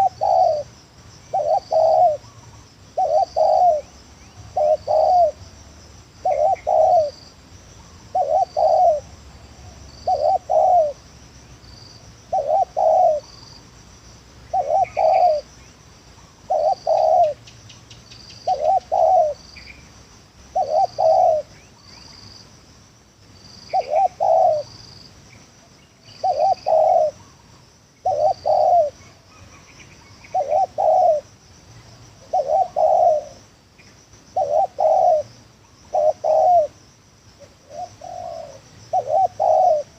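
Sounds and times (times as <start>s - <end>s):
dove cooing: 0.0s - 0.7s, 1.3s - 5.4s, 6.2s - 7.2s, 7.9s - 11.1s, 12.3s - 13.3s, 14.5s - 15.5s, 16.5s - 17.4s, 18.4s - 19.4s, 20.5s - 21.8s, 23.7s - 24.7s, 26.1s - 27.4s, 28.0s - 31.3s, 32.2s - 33.5s, 34.3s - 36.8s, 37.4s - 39.9s.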